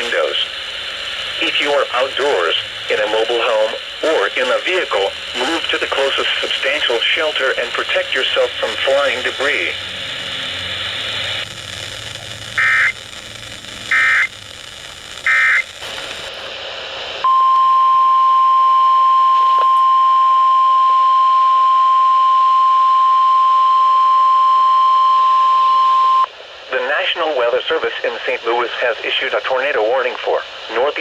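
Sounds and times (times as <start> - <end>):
radio hiss and static: 0.0 - 17.3, 19.2 - 19.9, 22.1 - 31.0
digital data bursts: 1.4 - 16.3
loud steady high alarm tone: 12.6 - 13.2, 13.9 - 14.4, 15.2 - 16.3, 17.2 - 26.3.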